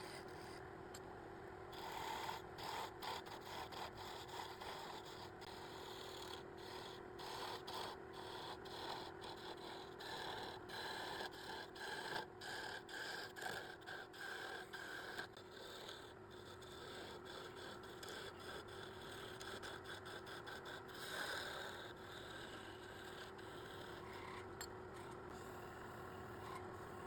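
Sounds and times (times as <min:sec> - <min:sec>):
faint steady hum: 0:00.0 - 0:27.0.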